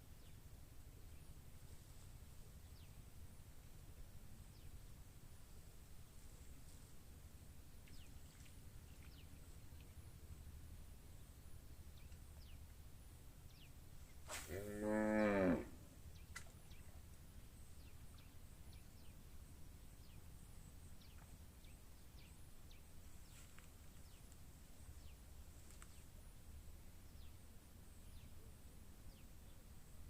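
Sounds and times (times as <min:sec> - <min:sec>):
cow mooing: 0:14.5 - 0:15.8.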